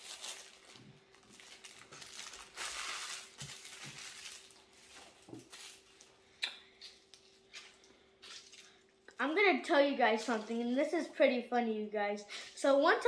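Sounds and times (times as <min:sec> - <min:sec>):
plastic packaging crinkling: 0:00.0 - 0:06.2.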